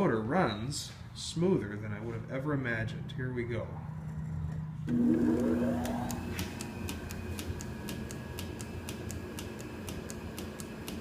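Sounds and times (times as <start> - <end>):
lathe motor humming and whining: 4.9 - 11.0
light regular ticking: 6.1 - 11.0.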